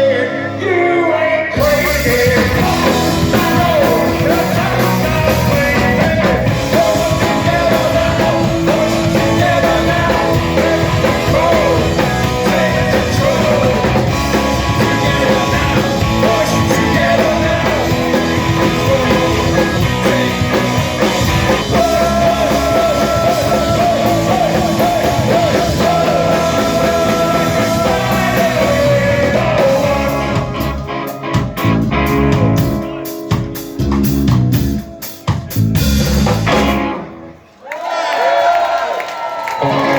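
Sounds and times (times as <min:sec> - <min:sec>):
person singing: 0:00.0 - 0:33.4
live rock band playing: 0:00.0 - 0:37.5, 0:39.6 - 0:39.9.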